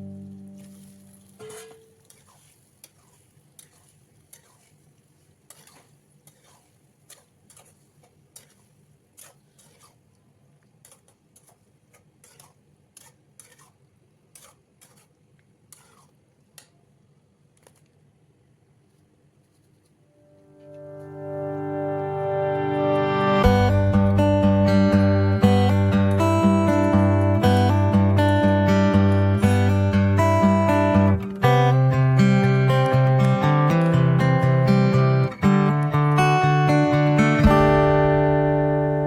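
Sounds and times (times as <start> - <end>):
utensil clinking against cookware: 0.6 - 4.6.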